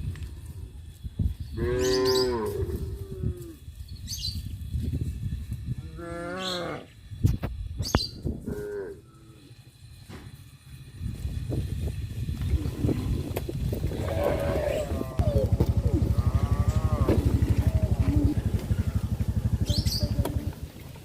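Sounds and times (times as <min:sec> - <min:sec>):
cows mooing: 0:01.6 - 0:03.6, 0:05.8 - 0:06.9, 0:12.4 - 0:19.1
faint bird chirps: 0:18.7 - 0:20.2.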